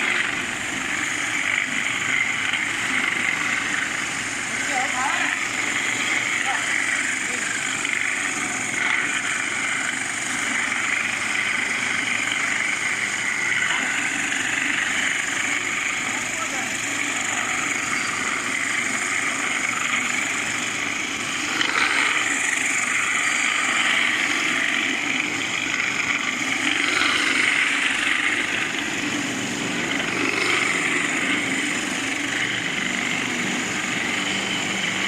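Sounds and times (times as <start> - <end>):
floor grinder and vacuum running: 0.0 - 35.0.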